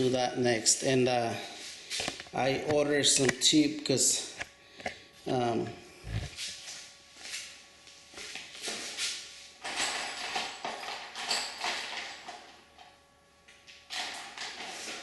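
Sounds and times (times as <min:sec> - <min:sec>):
rustling and clatter of parts: 0:08.1 - 0:15.0.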